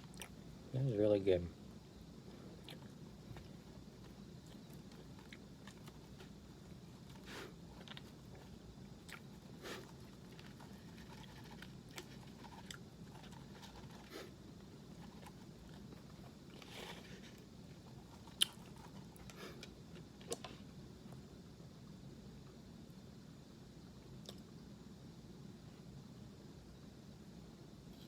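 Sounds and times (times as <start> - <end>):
close-up chewing with crunches: 0.0 - 0.4, 2.3 - 20.5.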